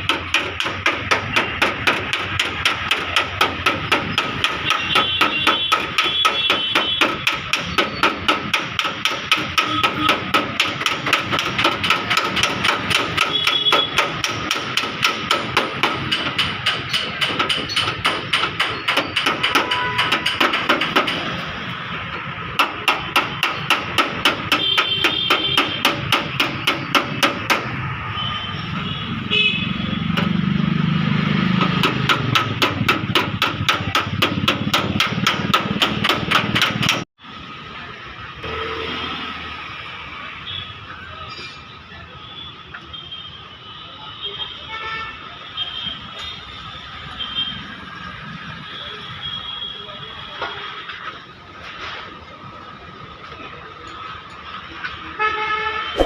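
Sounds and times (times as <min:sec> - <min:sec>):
hammer tapping on sheet metal: 0:00.0 - 0:21.4, 0:22.5 - 0:27.8, 0:31.5 - 0:37.1.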